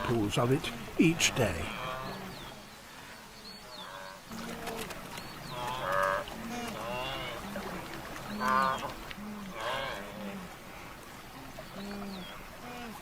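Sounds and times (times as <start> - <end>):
wildebeest grunting: 0.0 - 2.6, 8.4 - 10.6
wildebeest moaning calls: 0.0 - 2.7, 5.5 - 7.7, 8.3 - 10.6, 11.4 - 13.0.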